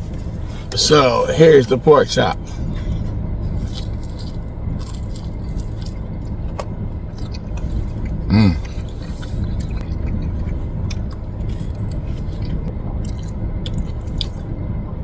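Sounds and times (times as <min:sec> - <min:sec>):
steady low hum: 0:00.0 - 0:15.0
man chewing: 0:02.3 - 0:15.0
man humming: 0:08.1 - 0:09.1.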